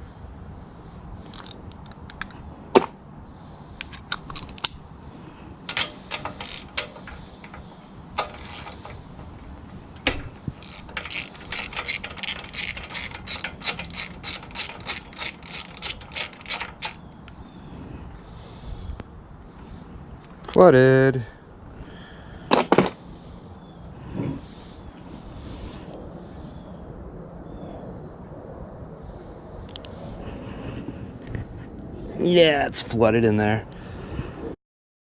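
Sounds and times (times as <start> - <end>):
ratchet wrench clicking: 5.7 - 9.3, 10.0 - 17.0.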